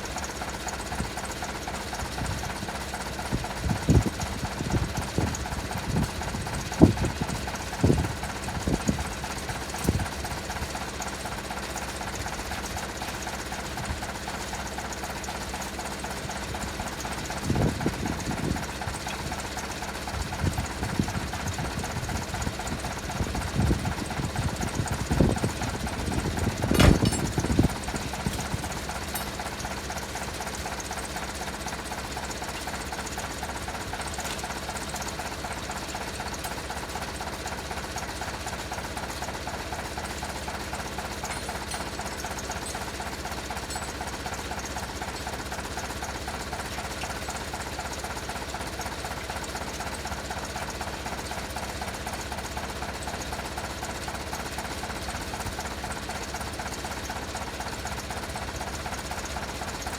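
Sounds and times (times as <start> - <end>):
tractor engine knocking: 0.0 - 59.9
metal clunks: 26.4 - 29.7.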